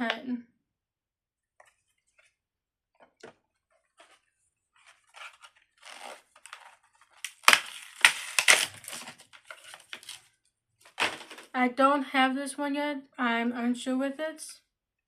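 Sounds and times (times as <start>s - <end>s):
packaging crinkling and rustling: 3.6s - 11.5s.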